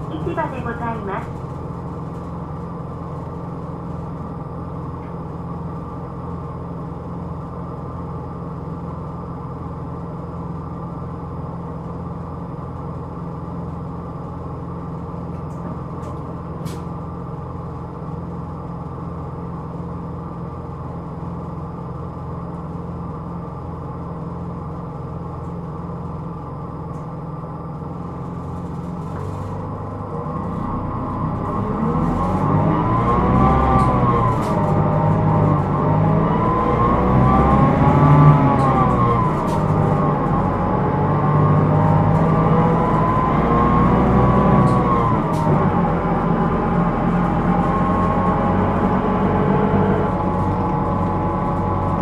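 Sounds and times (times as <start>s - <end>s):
bus diesel engine idling: 0.0s - 52.0s.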